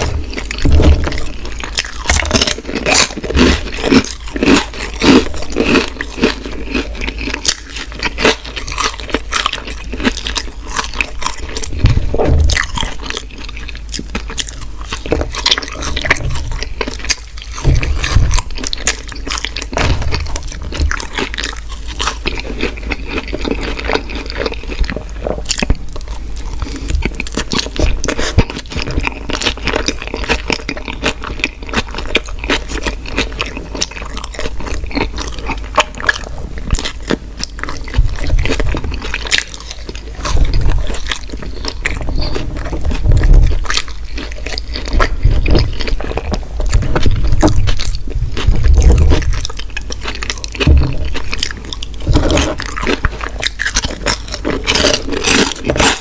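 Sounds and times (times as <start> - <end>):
person chewing: 0.0 - 56.0
low thumps: 11.2 - 13.0, 17.5 - 18.9, 19.6 - 21.7.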